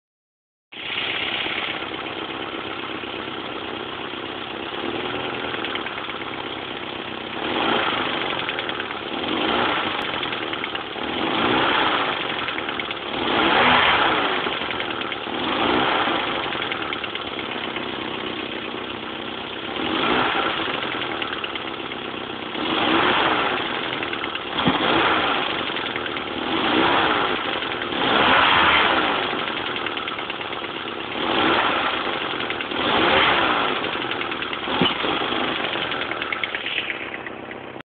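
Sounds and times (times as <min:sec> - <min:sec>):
car engine idling: 0:00.7 - 0:37.8
engine revving: 0:00.8 - 0:06.5, 0:07.2 - 0:37.8.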